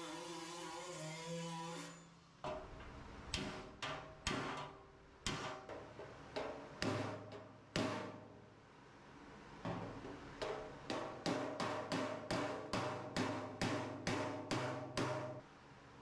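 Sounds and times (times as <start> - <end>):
hammer on sheet metal: 3.3 - 8.3, 9.7 - 15.4.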